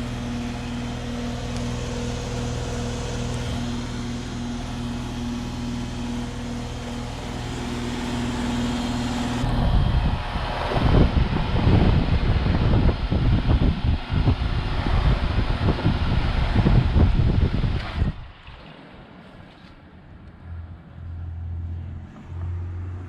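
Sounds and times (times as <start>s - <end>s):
heat pump electrical hum: 0.0s - 23.0s
wind on microphone: 9.4s - 18.6s.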